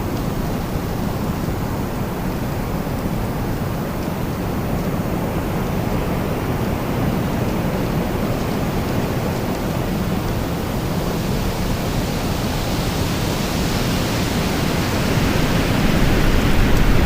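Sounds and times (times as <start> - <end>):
strong storm wind: 0.0 - 17.0.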